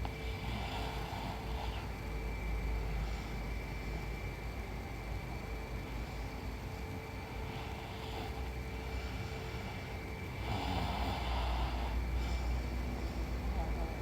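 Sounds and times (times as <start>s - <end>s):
faint breath: 0.0s - 4.3s, 5.8s - 13.8s
woman snoring: 10.4s - 12.6s.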